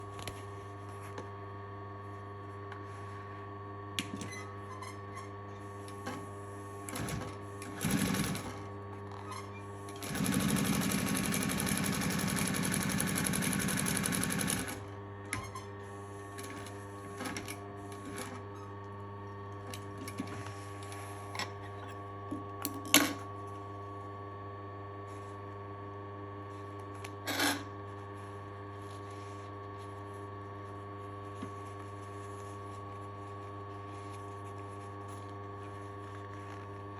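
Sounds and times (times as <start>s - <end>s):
sewing machine clicks: 6.9s - 8.6s, 10.0s - 14.8s
sewing machine motor humming: 6.9s - 8.6s, 10.0s - 14.9s
sewing machine stitching: 6.9s - 8.6s, 10.0s - 14.8s.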